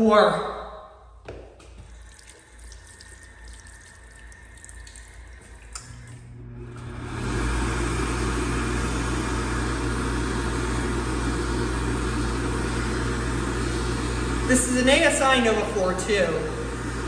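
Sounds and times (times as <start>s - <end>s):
hand dryer blowing: 5.0s - 17.0s.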